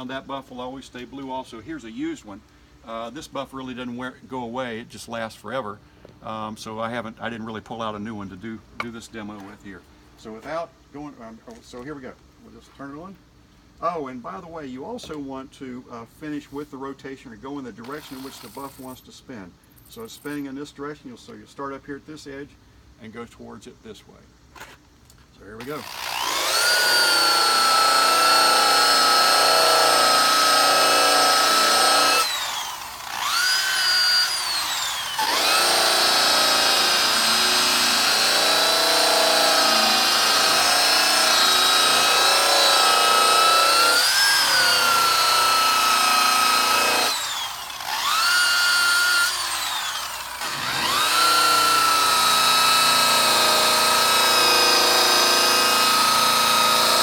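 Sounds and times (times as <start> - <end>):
power tool motor whining: 25.6 - 57.0.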